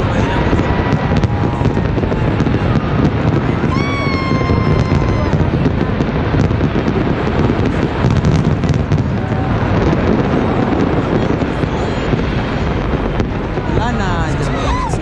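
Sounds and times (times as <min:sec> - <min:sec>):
fireworks booming and crackling: 0:00.0 - 0:15.0.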